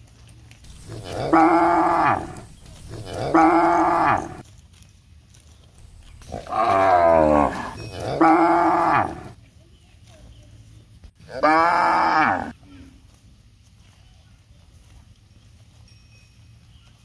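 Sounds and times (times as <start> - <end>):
cows mooing: 0.7 - 4.4, 6.1 - 9.4, 11.3 - 12.5.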